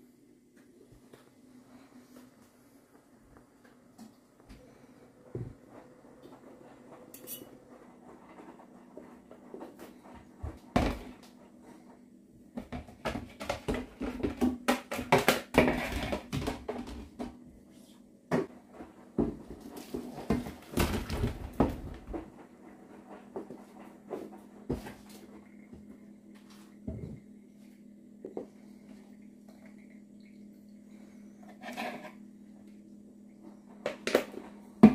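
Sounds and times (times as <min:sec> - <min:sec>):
dishes and cutlery clattering: 0:07.1 - 0:07.6.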